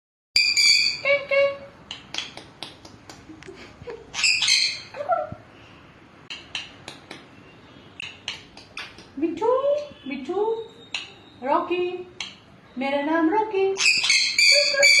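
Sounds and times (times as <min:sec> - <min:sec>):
parrot squawking: 0:00.4 - 0:01.1, 0:04.1 - 0:05.2, 0:13.8 - 0:15.0
sharp clicks and taps: 0:01.9 - 0:03.6, 0:06.3 - 0:07.3, 0:08.0 - 0:09.2.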